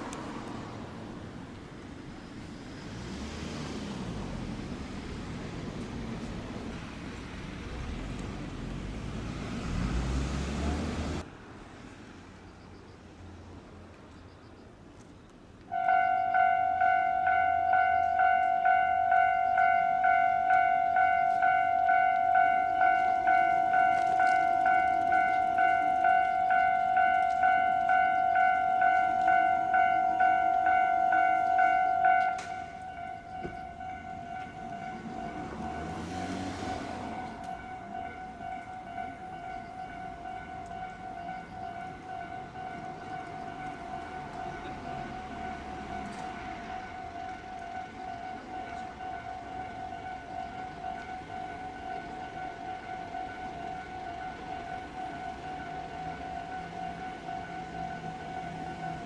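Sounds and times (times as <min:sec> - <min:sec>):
train noise: 0:00.0 - 0:59.0
railroad crossing bell clanging: 0:15.6 - 0:59.0.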